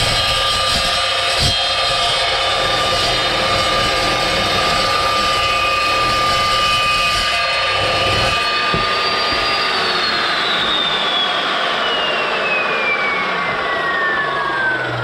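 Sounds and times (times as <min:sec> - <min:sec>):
saw blade grinding through steel: 0:00.0 - 0:10.1
chop saw motor whine: 0:00.0 - 0:15.0.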